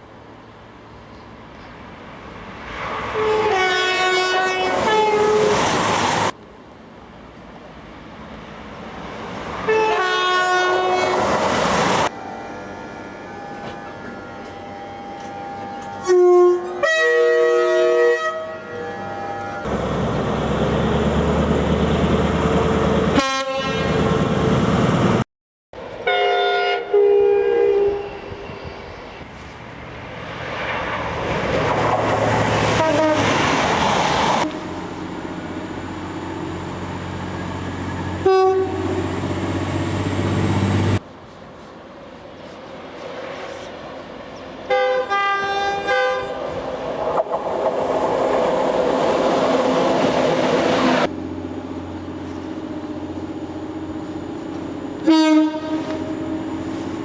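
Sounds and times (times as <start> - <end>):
trains rumbling and clattering past: 0.0 - 25.2, 25.8 - 57.0
two-tone train horn blasts: 2.9 - 5.6, 9.7 - 19.7, 23.1 - 24.0, 26.0 - 28.6, 32.7 - 33.4, 38.2 - 39.1, 44.7 - 46.4, 55.0 - 57.0.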